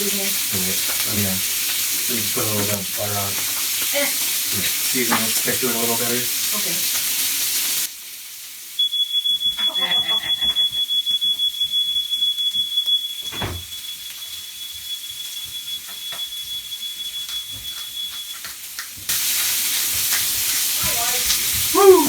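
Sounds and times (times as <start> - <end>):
food sizzling in a pan: 0.0 - 22.0
smoke alarm tone: 8.8 - 18.6.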